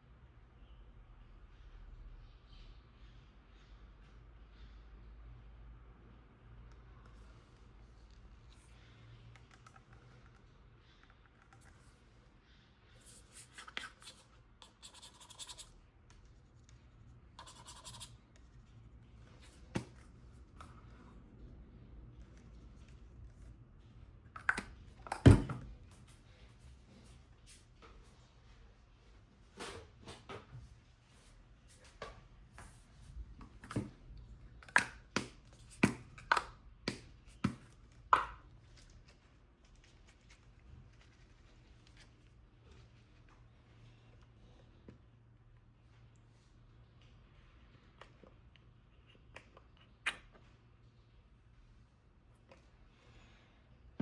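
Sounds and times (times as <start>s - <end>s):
bottle and packaging clicks: 24.3s - 25.6s.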